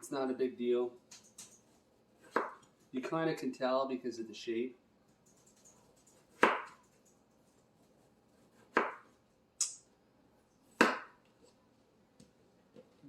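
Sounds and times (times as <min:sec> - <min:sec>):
knife chopping melon: 0:02.2 - 0:02.6, 0:06.2 - 0:06.8, 0:08.3 - 0:09.1, 0:10.8 - 0:11.2.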